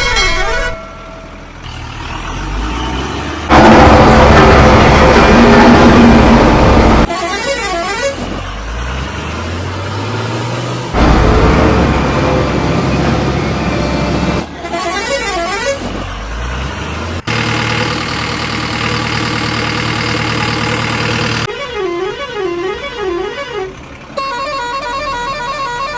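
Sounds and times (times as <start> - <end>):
heavy vehicle engine running: 0.9 - 7.3, 8.0 - 21.5, 22.6 - 25.9
steady horn: 3.5 - 8.2.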